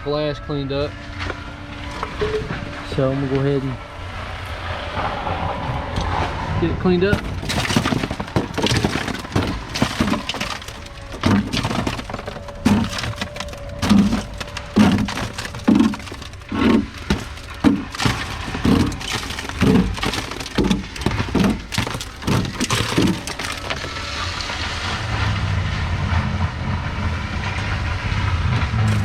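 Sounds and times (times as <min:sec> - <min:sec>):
broken glass crunching and scraping: 0:01.8 - 0:02.6, 0:07.0 - 0:25.4, 0:28.8 - 0:29.0.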